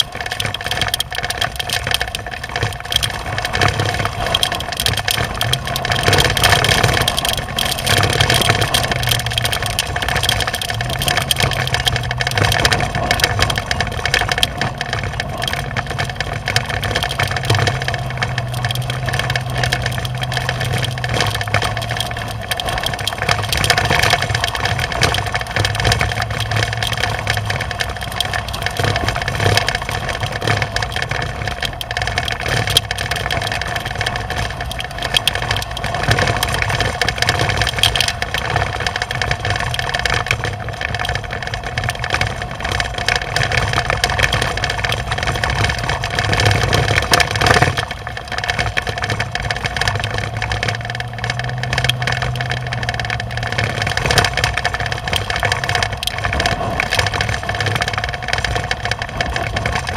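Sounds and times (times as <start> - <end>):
rough rattly noise: 0.0 - 59.9
vehicle engine running: 0.0 - 59.9.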